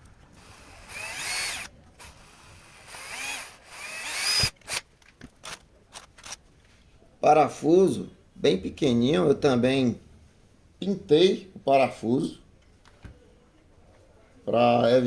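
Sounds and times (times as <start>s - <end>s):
small electric drill whining: 0.3s - 4.8s.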